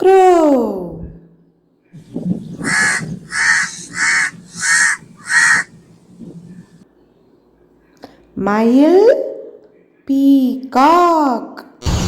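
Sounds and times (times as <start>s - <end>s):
crow cawing: 2.4s - 6.8s.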